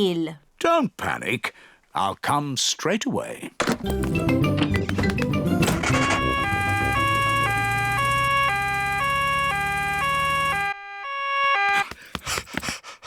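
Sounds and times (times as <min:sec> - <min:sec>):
cartoon two-tone siren: 0:05.6 - 0:11.9.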